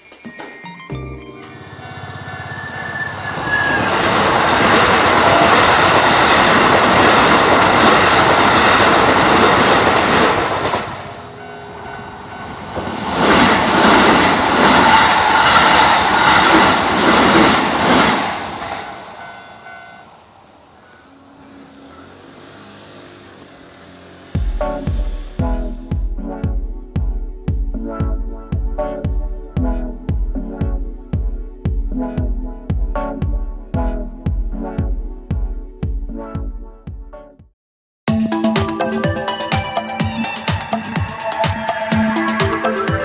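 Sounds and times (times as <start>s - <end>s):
train wheels on rail: 1.4s - 25.9s.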